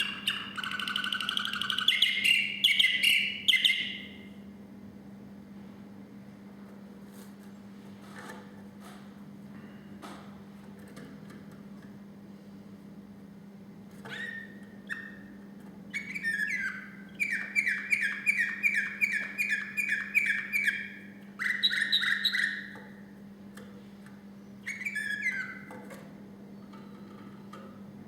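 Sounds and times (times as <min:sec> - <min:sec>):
canary singing: 0:00.0 - 0:04.3, 0:14.0 - 0:23.1, 0:24.4 - 0:26.0
faint steady hum: 0:00.0 - 0:28.0.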